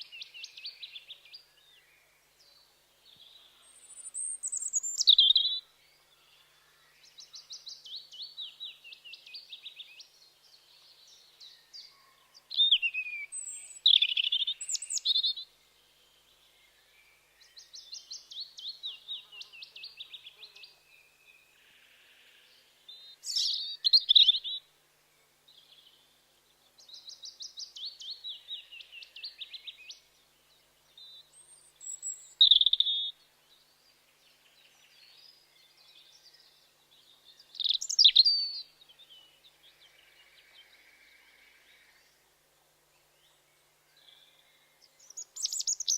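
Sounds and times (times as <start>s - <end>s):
robin singing: 0.0s - 6.0s, 6.8s - 15.6s, 22.9s - 24.7s, 26.8s - 42.2s, 43.0s - 45.9s.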